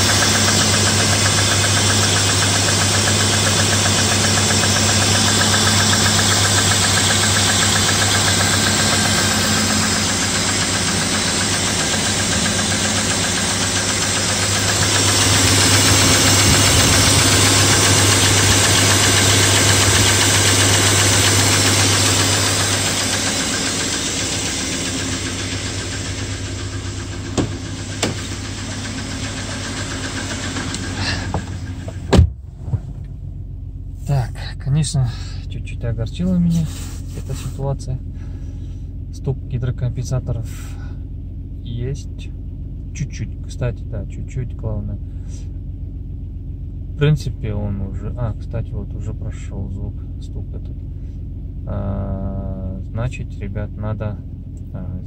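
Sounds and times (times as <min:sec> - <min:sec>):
engine lifters ticking: 0:00.0 - 0:32.1
car engine idling: 0:00.0 - 0:55.0
short knocks: 0:27.4 - 0:28.3.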